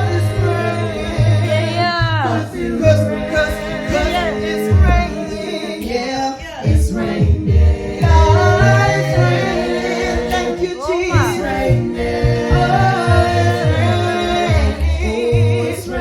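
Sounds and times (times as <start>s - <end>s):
a cappella group singing: 0.0s - 16.0s
deep sung bass line: 0.0s - 16.0s.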